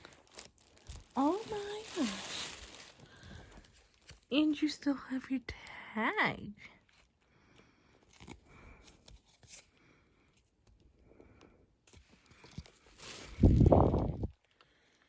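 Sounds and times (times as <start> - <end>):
plush toy and box rustling: 0.0 - 4.6, 11.8 - 14.6.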